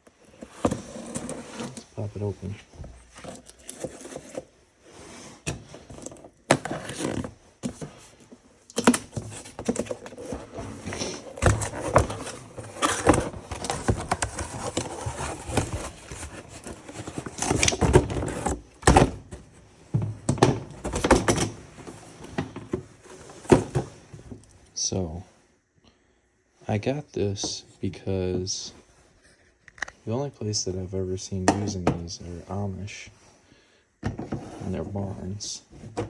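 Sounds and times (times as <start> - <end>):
packaging rustling and scraping: 0.0 - 19.7, 20.6 - 24.5.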